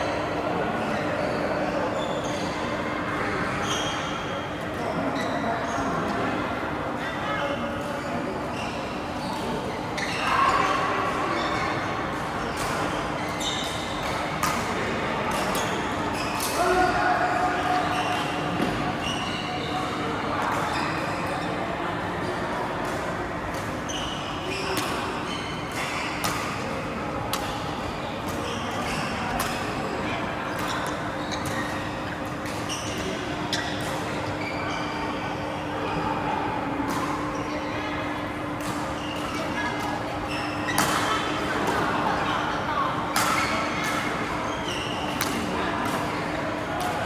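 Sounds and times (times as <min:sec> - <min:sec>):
low hum in hall: 0:00.0 - 0:47.0
rackets striking shuttlecock: 0:40.8 - 0:41.9.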